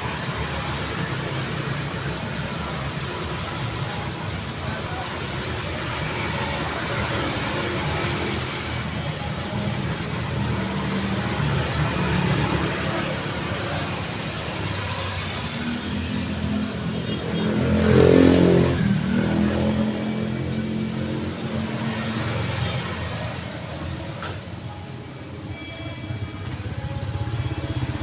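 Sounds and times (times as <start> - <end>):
road traffic: 0.0 - 28.0
vehicle engine passing close: 14.3 - 24.0.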